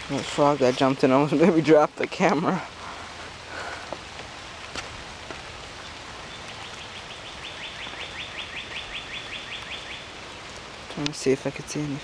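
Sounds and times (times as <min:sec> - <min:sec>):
light drizzle hissing: 0:00.0 - 0:12.0.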